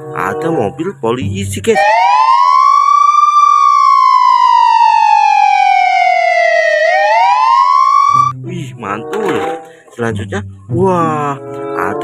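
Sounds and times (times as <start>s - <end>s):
police siren wailing: 1.8s - 8.3s.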